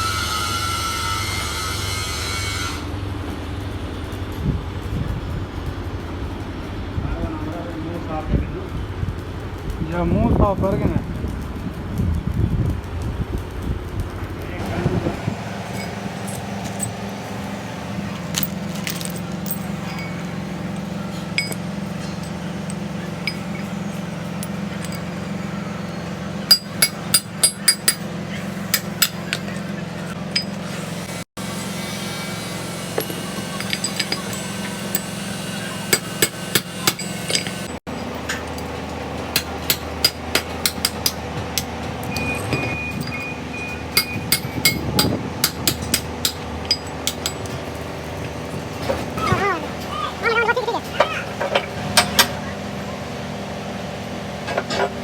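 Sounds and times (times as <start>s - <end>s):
low machine hum: 14.2s - 54.7s
hammer striking steel: 19.0s - 25.2s, 26.5s - 28.1s, 28.7s - 29.7s, 32.9s - 35.2s, 35.8s - 37.7s, 39.3s - 41.8s, 44.0s - 47.6s.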